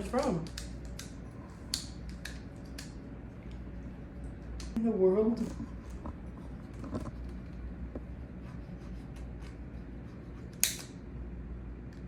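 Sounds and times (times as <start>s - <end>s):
lighter clicking: 10.6s - 11.0s.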